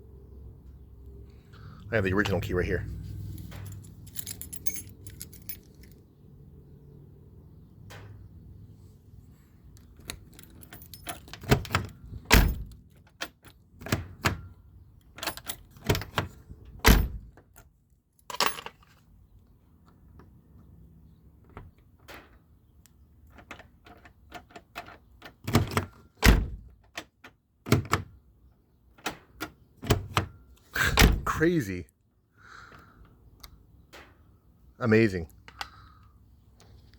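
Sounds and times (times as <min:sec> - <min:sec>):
keys jangling: 0:03.2 - 0:06.0, 0:09.8 - 0:13.8, 0:15.0 - 0:17.6, 0:18.2 - 0:19.0
lock clicking and knocking: 0:09.8 - 0:17.6, 0:21.5 - 0:28.2, 0:29.0 - 0:30.3.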